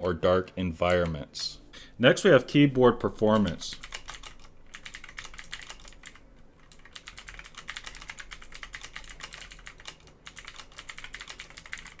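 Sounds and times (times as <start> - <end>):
fast mechanical keyboard typing: 3.2 - 12.0.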